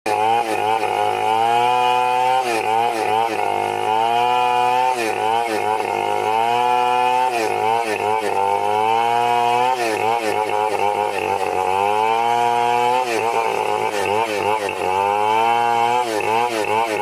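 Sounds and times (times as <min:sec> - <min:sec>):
chainsaw cutting wood: 0:00.1 - 0:17.0.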